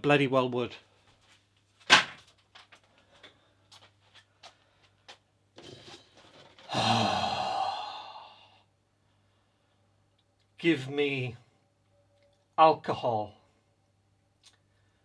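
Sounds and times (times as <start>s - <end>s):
man sighing: 6.6s - 8.7s.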